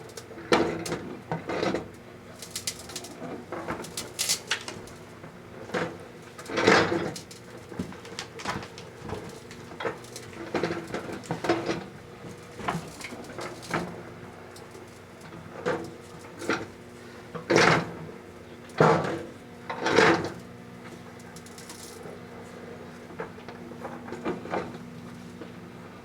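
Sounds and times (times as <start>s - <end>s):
microwave oven humming: 0.0s - 26.0s
plastic crackling and popping: 3.8s - 5.0s, 7.2s - 11.1s.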